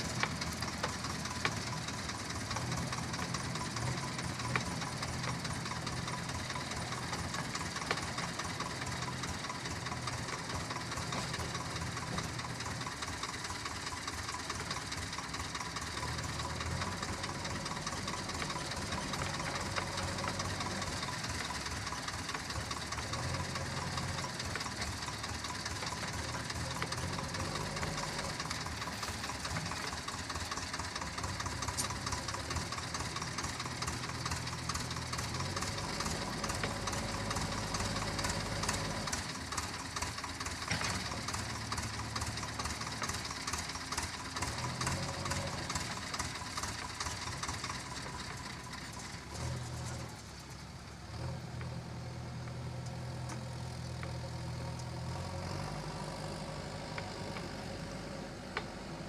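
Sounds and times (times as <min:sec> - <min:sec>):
diesel engine running under load: 0:00.0 - 0:59.0.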